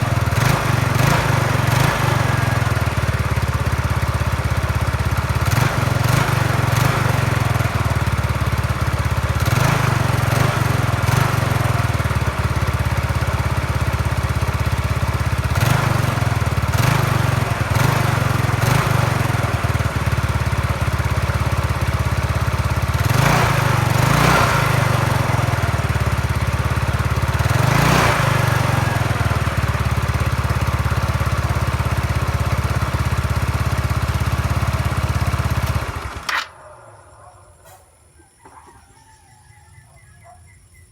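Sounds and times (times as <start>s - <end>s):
scooter engine running: 0.0s - 37.7s.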